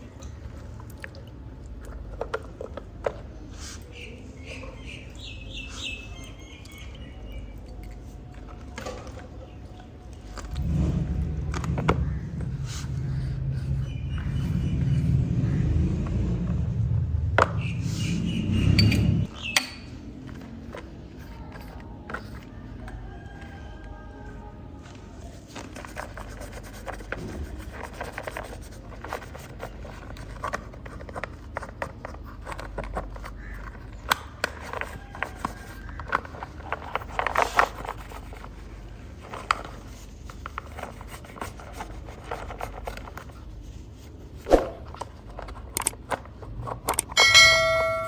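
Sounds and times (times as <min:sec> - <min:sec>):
hands rubbing and scraping toy car: 0:25.2 - 0:47.2.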